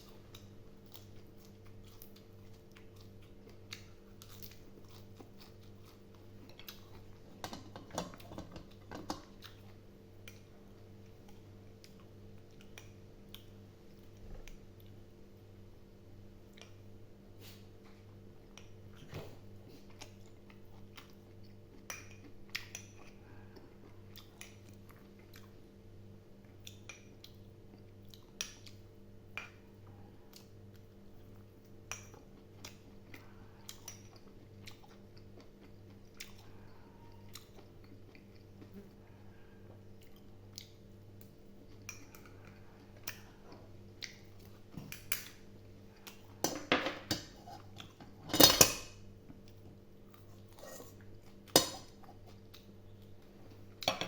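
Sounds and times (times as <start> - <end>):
close-up chewing: 0.0 - 15.0, 26.4 - 46.4
steady low hum: 0.0 - 54.0.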